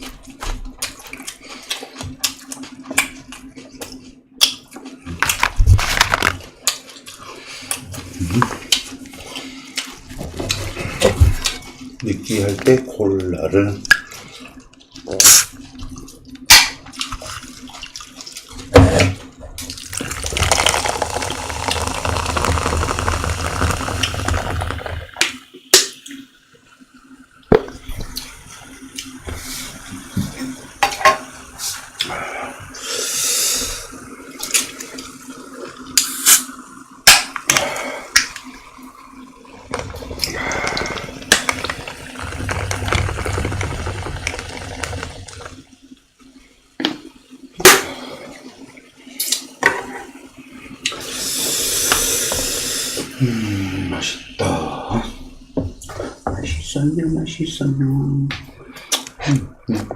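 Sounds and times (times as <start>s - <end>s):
fizzy drink pouring: 19.7s - 25.5s, 38.2s - 45.8s.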